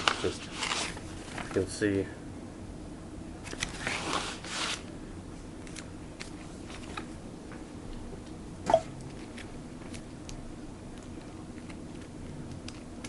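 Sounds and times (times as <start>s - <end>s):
paper rustling: 0.0s - 1.7s, 3.4s - 4.8s.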